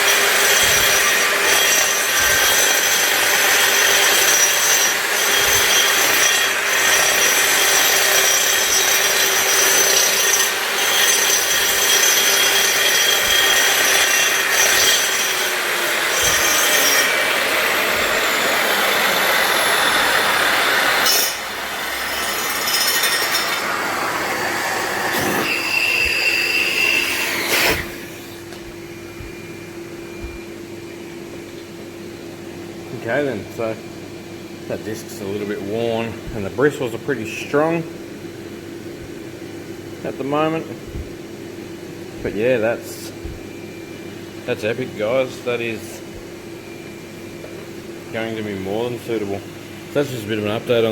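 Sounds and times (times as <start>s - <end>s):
angle grinder grinding floor: 0.0s - 30.4s, 42.2s - 50.9s
steady hum: 23.6s - 50.9s.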